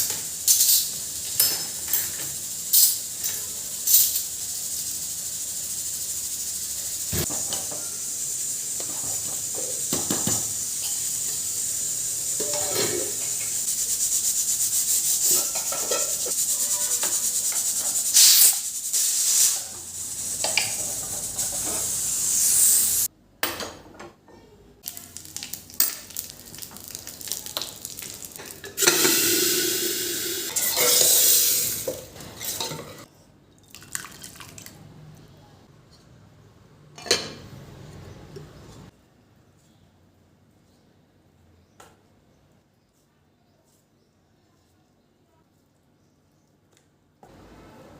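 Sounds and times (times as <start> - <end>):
utensils and dishes clinking: 0.0 - 4.4, 12.3 - 13.7, 15.2 - 18.7, 23.4 - 33.1
steady hiss: 0.0 - 23.1, 24.8 - 32.7.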